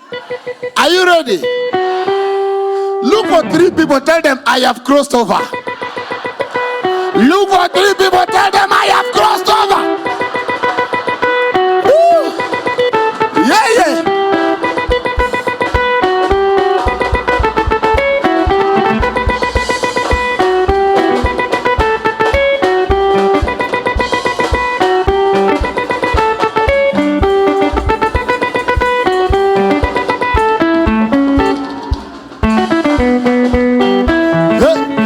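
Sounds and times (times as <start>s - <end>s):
plucked guitar melody: 0.0s - 35.0s
low drum beat: 14.8s - 34.2s.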